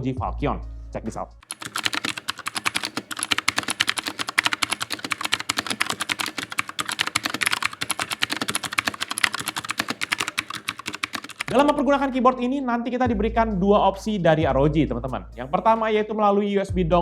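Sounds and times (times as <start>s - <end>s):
mechanical keyboard typing: 1.4s - 11.9s.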